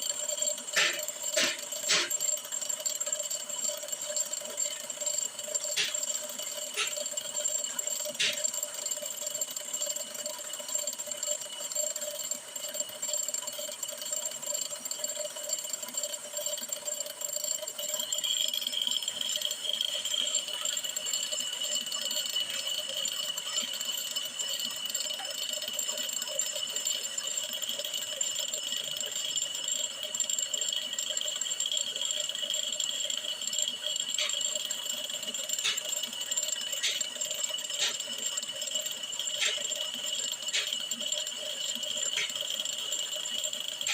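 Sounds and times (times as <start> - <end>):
brake lathe cutting metal drum: 0.0 - 43.9.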